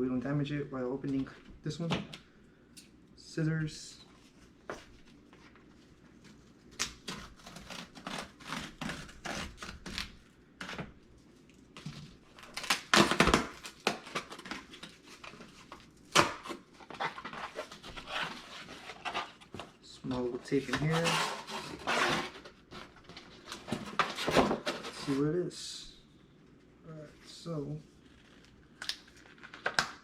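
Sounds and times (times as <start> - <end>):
packaging rustling: 4.9 - 25.2, 28.1 - 30.0
packaging tearing: 6.7 - 10.8, 11.8 - 19.6, 20.6 - 25.2, 28.1 - 30.0
scissors cutting packing tape: 6.8 - 10.8, 12.3 - 15.4.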